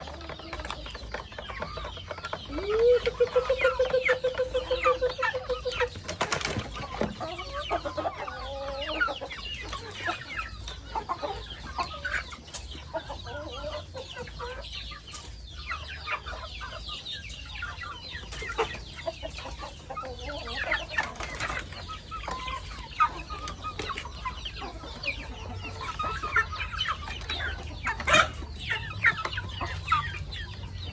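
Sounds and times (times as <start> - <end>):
young chickens cheeping and clucking: 0.0 - 30.9.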